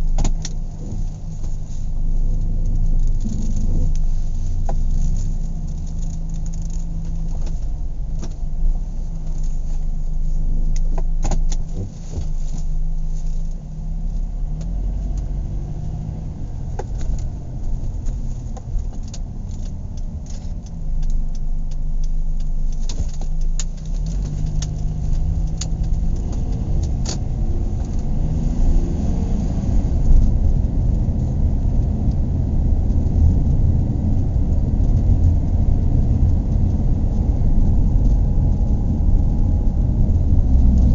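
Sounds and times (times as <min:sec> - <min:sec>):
small clicks and rattles: 0:00.0 - 0:28.3
car engine hum: 0:00.0 - 0:40.9
road noise: 0:00.0 - 0:40.9.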